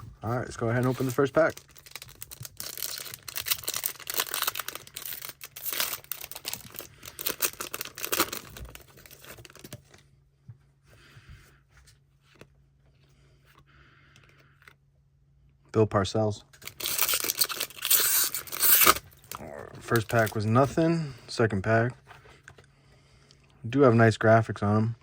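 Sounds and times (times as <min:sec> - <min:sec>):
wrapper tearing and crinkling: 0:00.8 - 0:09.8, 0:16.6 - 0:20.4.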